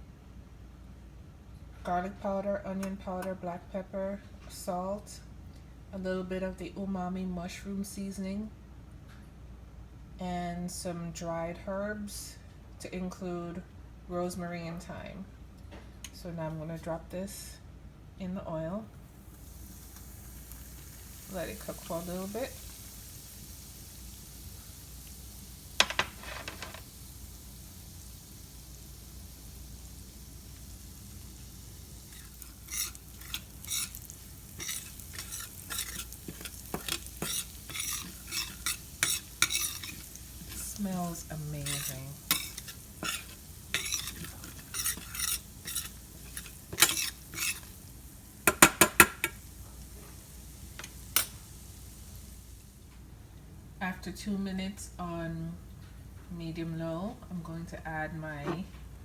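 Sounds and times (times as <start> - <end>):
faint sizzle: 10.1 - 59.0
spices frying in oil: 18.5 - 54.9
utensil scraping a pan: 32.1 - 47.8.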